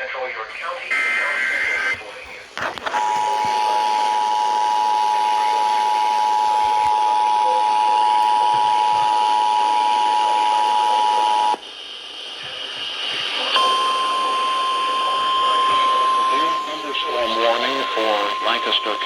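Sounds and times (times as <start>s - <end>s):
radio hiss: 0.0s - 19.0s
steady warning alarm tone: 0.6s - 2.4s, 3.0s - 11.6s, 13.5s - 19.0s
two-tone attention signal: 13.6s - 19.0s.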